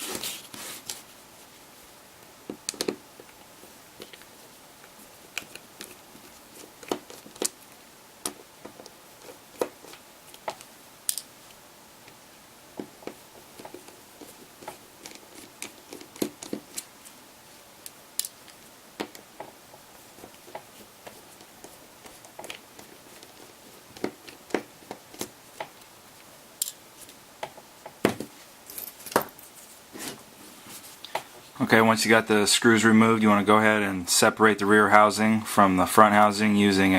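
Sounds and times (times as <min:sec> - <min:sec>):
screwdriver clicks and taps: 0:02.5 - 0:03.0.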